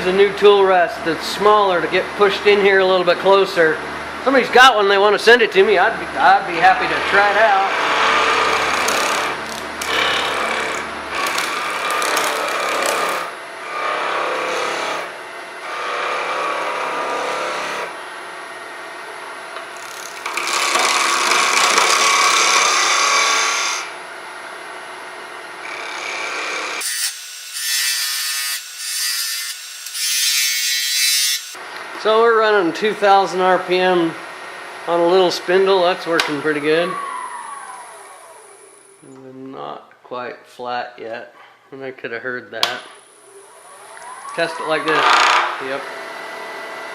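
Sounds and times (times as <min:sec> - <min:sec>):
chisel cutting wood on lathe: 0:06.5 - 0:17.9, 0:19.8 - 0:23.9, 0:25.6 - 0:31.2, 0:43.8 - 0:45.4.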